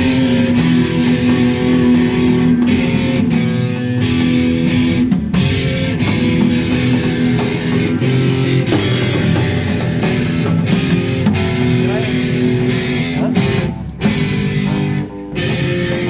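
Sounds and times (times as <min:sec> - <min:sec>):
garage rock guitar music: 0:00.0 - 0:16.0
cymbal crash: 0:08.7 - 0:12.4.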